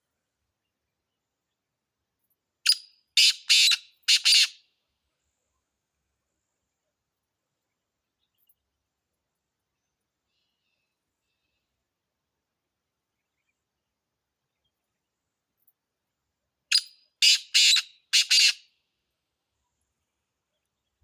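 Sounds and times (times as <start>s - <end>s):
francolin calling: 2.7s - 4.6s, 16.7s - 18.6s.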